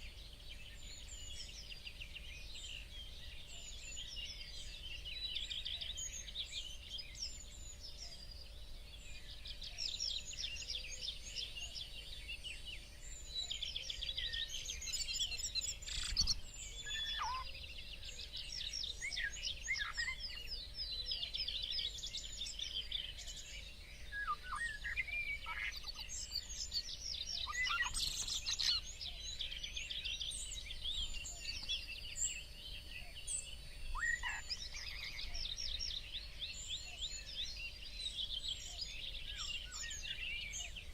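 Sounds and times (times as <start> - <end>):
songbirds chirping and singing: 0.0 - 40.9.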